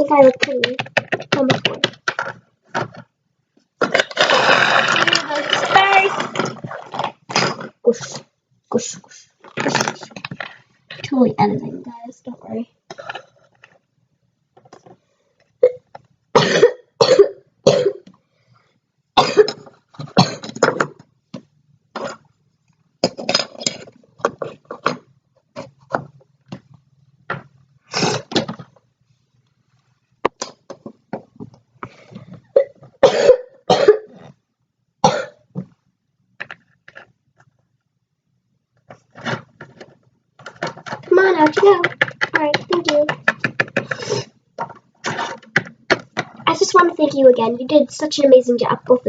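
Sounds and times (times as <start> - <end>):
person coughing: 16.4 - 18.1, 19.2 - 19.6, 20.2 - 20.6, 32.5 - 34.2.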